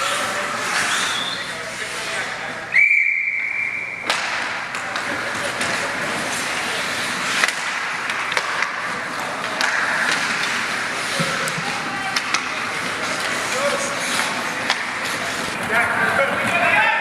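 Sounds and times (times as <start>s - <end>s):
skates scraping on ice: 0.0s - 2.7s, 4.1s - 17.0s
referee's whistle blast: 0.8s - 1.6s, 2.8s - 4.0s
sticks and puck clicking: 4.1s - 15.7s.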